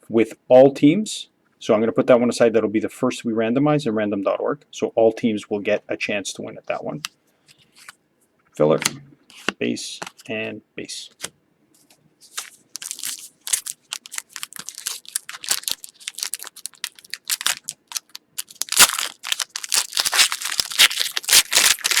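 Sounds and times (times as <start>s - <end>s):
foil wrapper tearing and crinkling: 12.3s - 22.0s.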